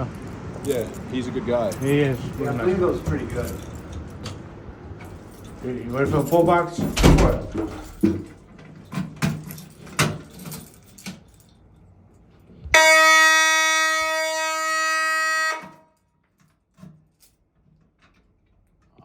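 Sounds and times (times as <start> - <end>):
fire alarm horn: 12.7 - 16.0.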